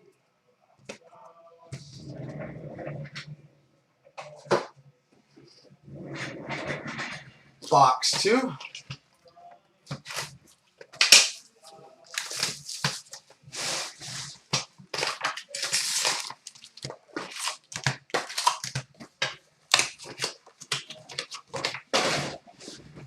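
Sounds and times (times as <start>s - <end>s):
packaging tearing and crinkling: 11.0s - 11.5s, 12.1s - 19.0s, 19.7s - 22.2s.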